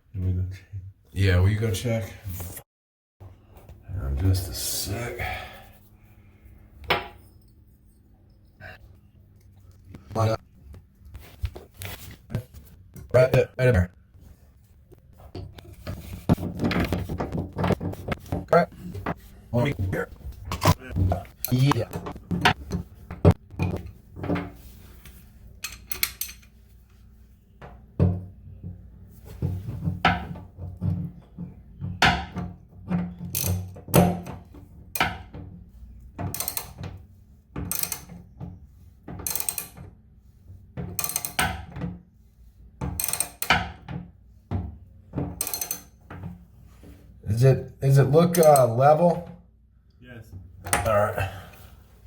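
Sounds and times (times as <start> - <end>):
tools knocking on drain parts: 15.2 - 24.6, 29.5 - 35.5, 36.2 - 37.0, 40.8 - 41.9, 42.8 - 46.4.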